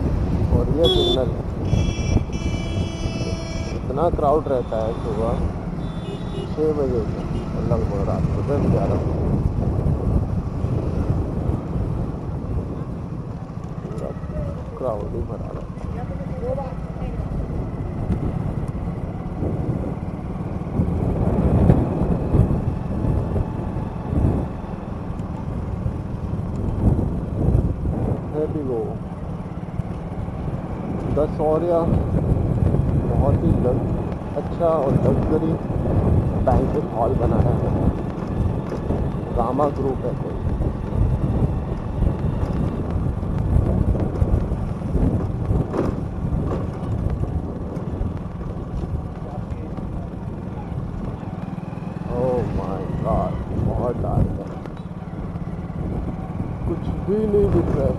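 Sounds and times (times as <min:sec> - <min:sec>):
motorbike engine rumble: 0:00.0 - 0:57.9
road noise: 0:00.0 - 0:57.9.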